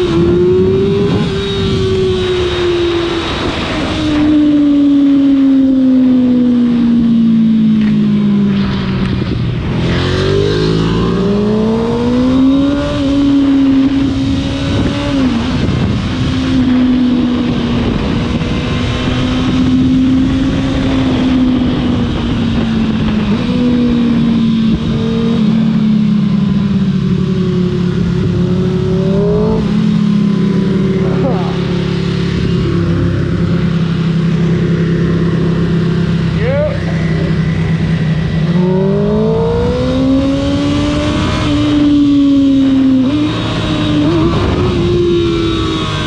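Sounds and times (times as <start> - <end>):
motorcycle engine accelerating: 0.0 - 46.0
wind rush: 0.0 - 46.0.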